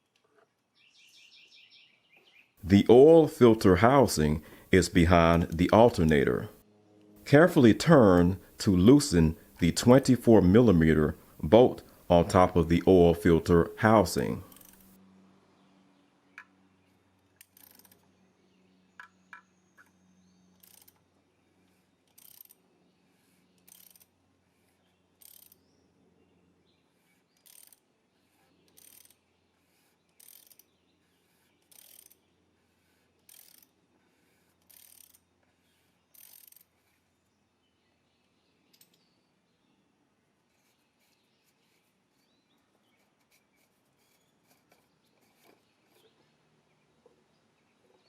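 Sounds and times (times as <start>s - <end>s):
ratchet wrench clicking: 20.6s - 21.0s, 22.1s - 22.6s, 23.6s - 24.1s, 25.2s - 25.6s, 27.4s - 27.8s, 28.7s - 29.2s, 30.2s - 30.7s, 31.7s - 32.2s, 33.3s - 33.7s, 34.6s - 35.2s, 36.1s - 36.7s.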